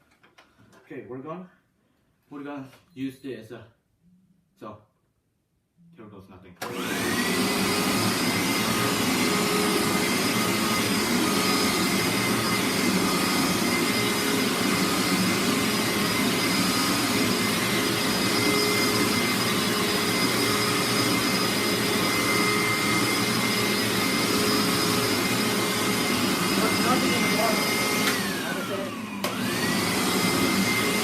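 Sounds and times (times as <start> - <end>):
carpet cleaner motor whining: 6.6 - 31.0.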